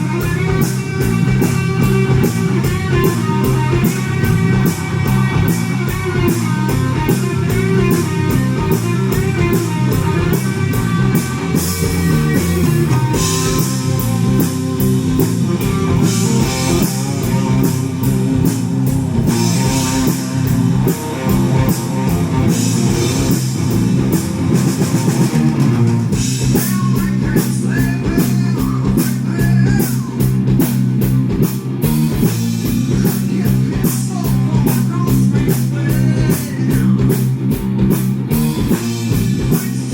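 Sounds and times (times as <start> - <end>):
progressive rock band playing: 0.0 - 39.9.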